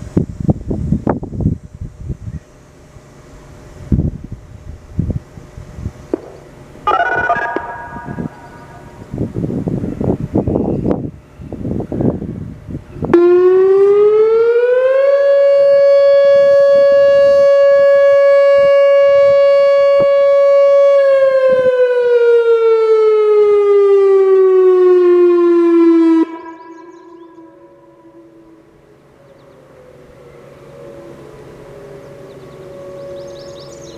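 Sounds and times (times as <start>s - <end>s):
electronic warning siren: 6.8s - 9.5s, 13.1s - 33.9s.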